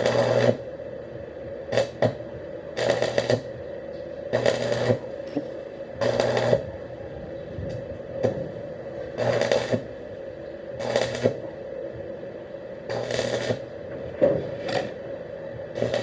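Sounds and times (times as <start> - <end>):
welding arc crackling: 0.0 - 0.9, 1.7 - 16.0
welding machine hum: 0.0 - 16.0.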